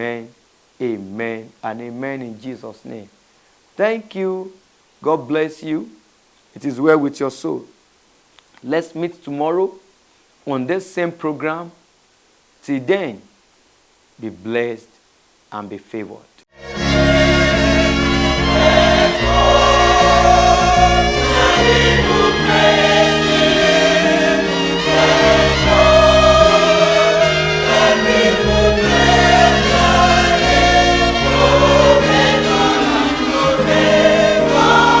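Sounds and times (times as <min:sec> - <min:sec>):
gospel choir singing: 0:16.6 - 0:35.0
steady bass line: 0:16.6 - 0:35.0.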